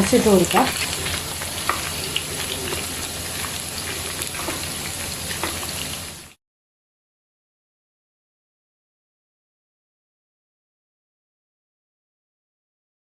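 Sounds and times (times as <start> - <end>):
chicken sizzling in hot oil: 0.0 - 6.4.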